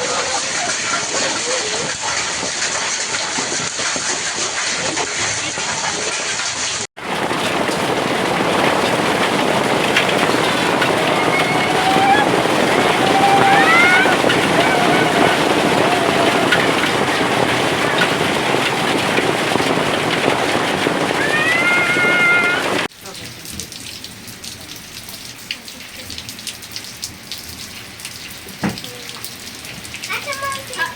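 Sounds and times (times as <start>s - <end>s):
heavy rain pouring: 0.0s - 30.9s
raindrops ticking on hard surface: 7.0s - 30.9s.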